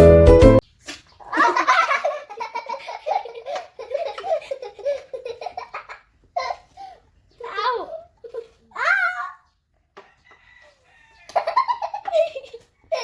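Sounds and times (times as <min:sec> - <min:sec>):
child laughing: 0:00.9 - 0:09.4, 0:11.3 - 0:13.0.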